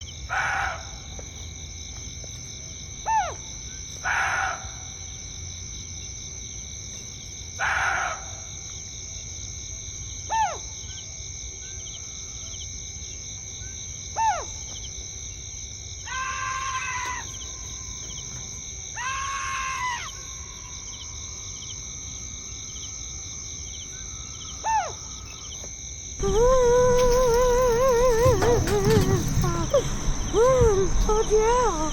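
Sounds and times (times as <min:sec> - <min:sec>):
crickets trilling: 0:00.0 - 0:31.9
long wavering cries: 0:16.1 - 0:21.9, 0:26.2 - 0:31.9.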